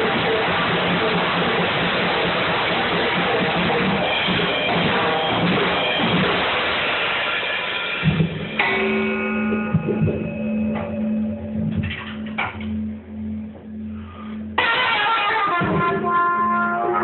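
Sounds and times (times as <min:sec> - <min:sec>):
music with loud drums: 0:00.0 - 0:12.6, 0:14.5 - 0:17.0
rushing noise: 0:00.0 - 0:15.2.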